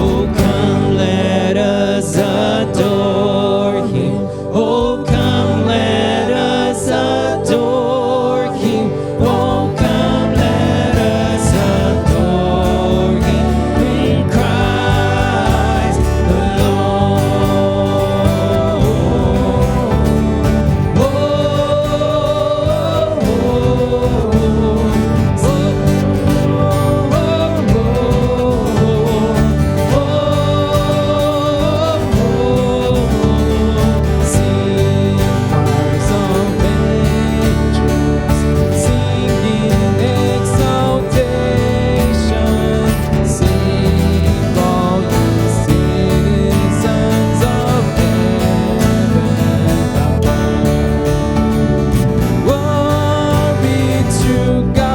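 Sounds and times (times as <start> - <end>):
acoustic guitar: 0.0 - 54.9
voices singing along: 0.0 - 54.9
worship band playing: 0.0 - 54.9.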